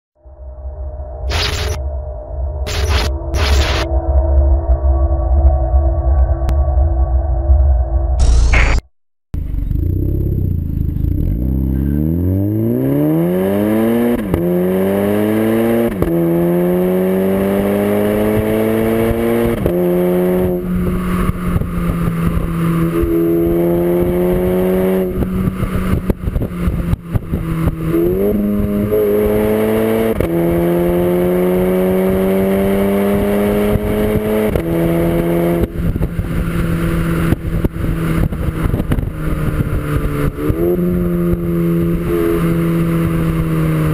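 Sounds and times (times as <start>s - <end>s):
car engine accelerating through gears: 9.4s - 43.9s.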